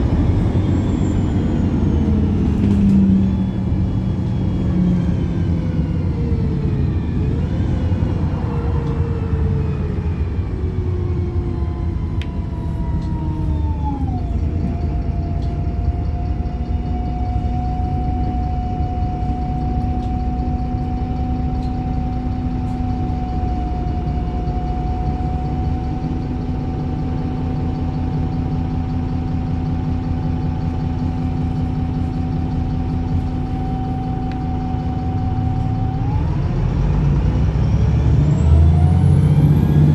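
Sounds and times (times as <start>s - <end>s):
bus drivetrain whine: 0.0s - 39.9s
bus engine rumble: 0.0s - 39.9s.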